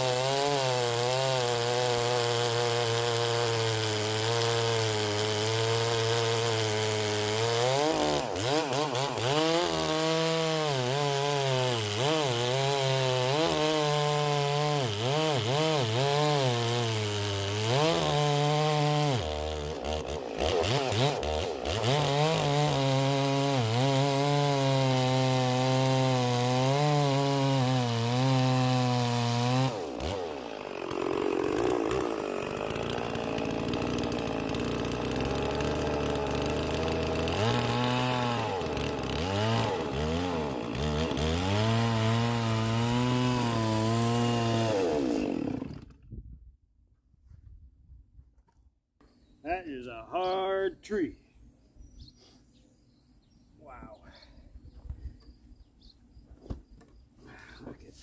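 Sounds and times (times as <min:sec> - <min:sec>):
chainsaw cutting log: 0:00.0 - 0:46.2.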